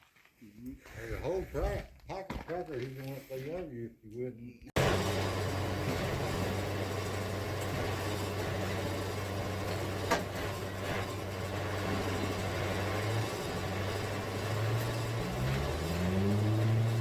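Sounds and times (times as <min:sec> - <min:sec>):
engine humming: 0:04.8 - 0:17.0.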